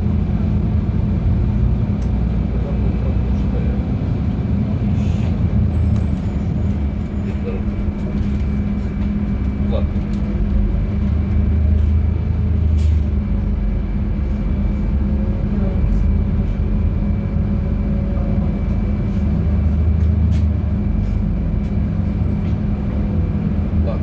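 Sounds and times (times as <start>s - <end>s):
bus engine drone: 0.0s - 24.0s.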